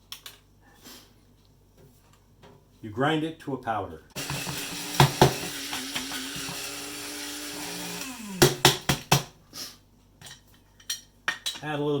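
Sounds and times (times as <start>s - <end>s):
small electric motor whirring: 4.2s - 8.7s.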